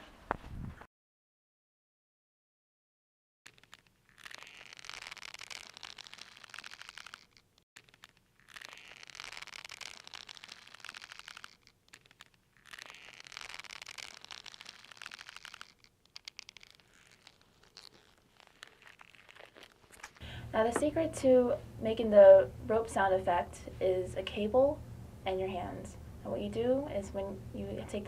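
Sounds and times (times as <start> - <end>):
cable bundle rubbing and creaking: 3.5 - 21.2.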